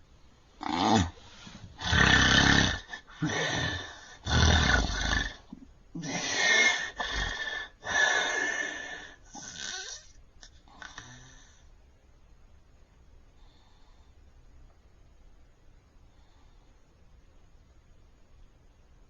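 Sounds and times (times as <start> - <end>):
man snoring loudly: 0.6 - 1.2, 1.8 - 7.4.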